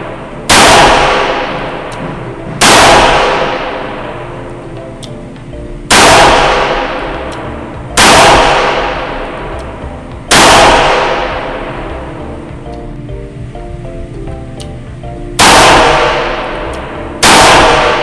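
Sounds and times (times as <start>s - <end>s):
revolver shots: 0.0s - 4.4s, 5.9s - 12.2s, 15.4s - 18.0s
faint background music: 0.0s - 18.0s.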